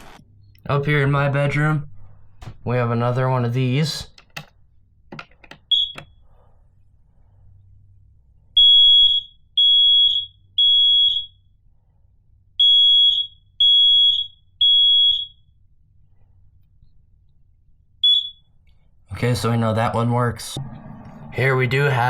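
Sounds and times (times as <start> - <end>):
smoke alarm chirp: 5.6 - 6.2, 8.6 - 11.5, 12.6 - 15.6, 18.0 - 18.6
smoke alarm beeps: 5.7 - 6.2, 8.6 - 11.5, 12.6 - 15.6, 18.0 - 18.6.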